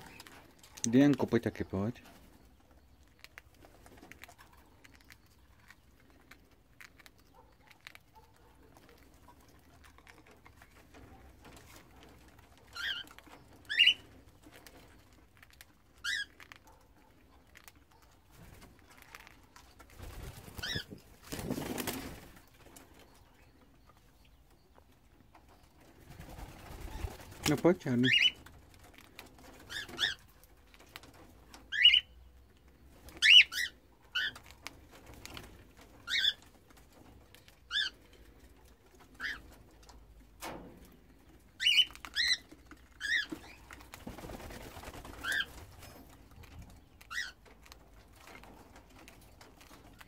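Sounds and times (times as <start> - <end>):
wing flapping: 19.8 - 22.5, 26.0 - 27.7, 43.1 - 46.1.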